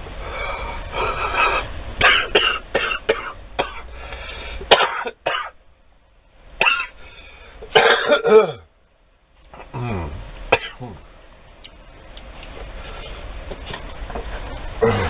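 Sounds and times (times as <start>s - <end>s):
man coughing: 4.7s - 5.5s, 6.6s - 7.0s, 7.7s - 8.7s, 9.8s - 11.0s.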